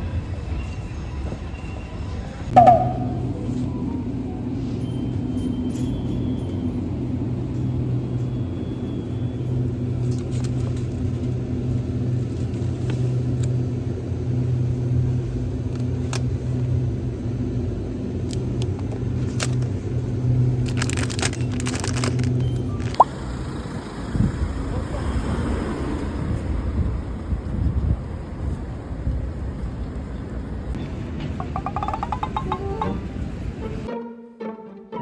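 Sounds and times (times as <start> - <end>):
vehicle rumble: 2.0 - 33.9
rattling: 30.8 - 33.2.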